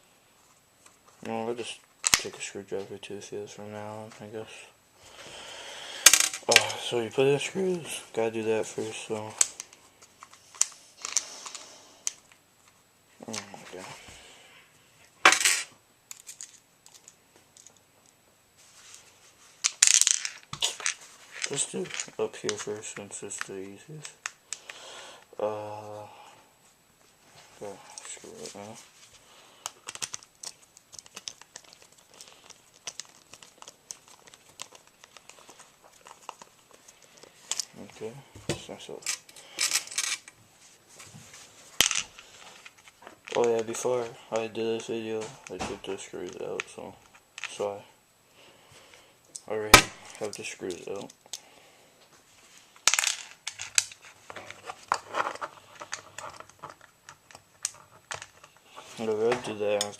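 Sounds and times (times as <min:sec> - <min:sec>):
rustling: 0:07.4 - 0:24.4, 0:26.6 - 0:47.7, 0:52.0 - 0:59.9
plastic parts clicking and scraping: 0:15.3 - 0:17.8, 0:19.6 - 0:24.8, 0:29.6 - 0:40.4, 0:41.8 - 0:44.5, 0:52.8 - 0:59.9.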